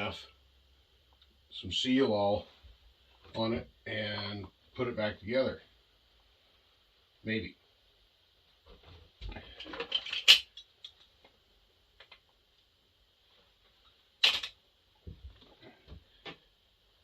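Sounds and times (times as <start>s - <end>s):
tools clicking and knocking: 9.6s - 11.1s, 14.2s - 14.6s.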